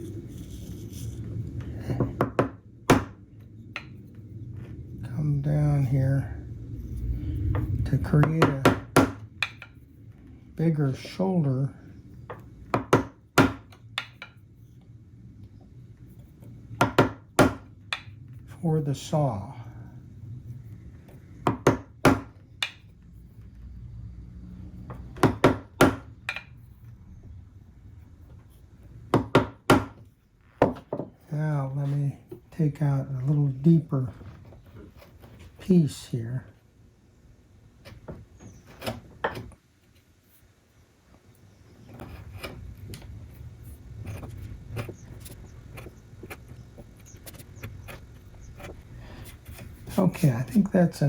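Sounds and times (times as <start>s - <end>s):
low rumble: 2.7s - 8.4s.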